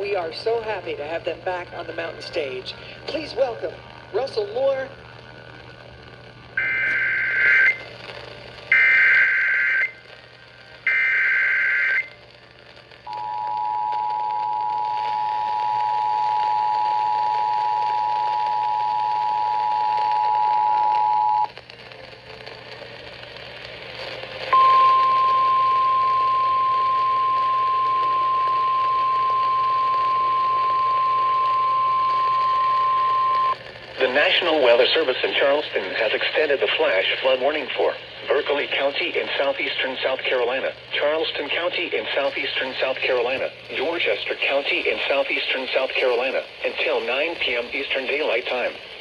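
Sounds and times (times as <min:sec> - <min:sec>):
two-tone attention signal: 0:06.6 - 0:07.8, 0:08.7 - 0:10.0, 0:24.6 - 0:33.6.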